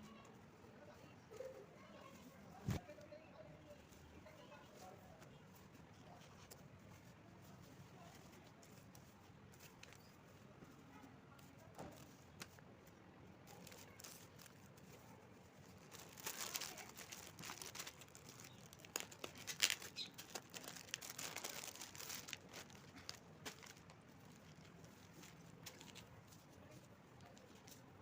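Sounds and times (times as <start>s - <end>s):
plastic packaging crinkling: 13.4s - 26.4s.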